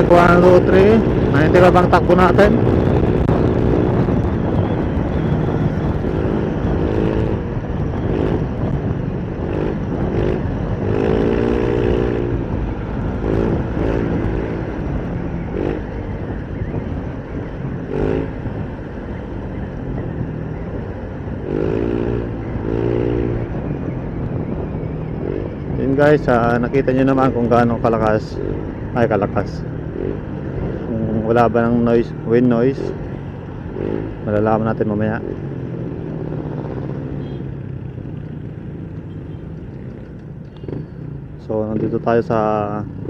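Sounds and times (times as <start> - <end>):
motorcycle engine: 0.0 - 43.0
road noise: 0.0 - 43.0
wind rushing over microphone: 0.0 - 43.0.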